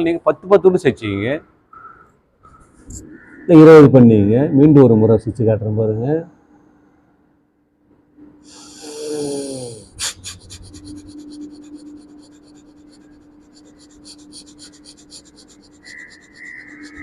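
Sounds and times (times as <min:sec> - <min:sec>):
faint steady hum: 0:00.0 - 0:17.0
rapid forceful breaths out: 0:08.5 - 0:17.0.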